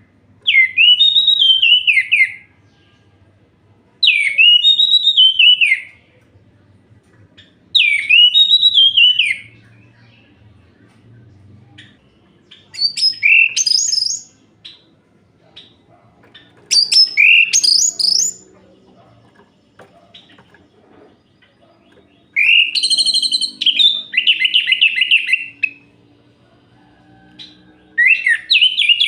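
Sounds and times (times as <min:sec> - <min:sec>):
thrush singing warbling whistles: 0:00.5 - 0:02.5, 0:04.0 - 0:05.9, 0:07.8 - 0:09.5, 0:12.8 - 0:14.8, 0:16.7 - 0:18.4, 0:22.3 - 0:25.9, 0:27.4 - 0:29.0.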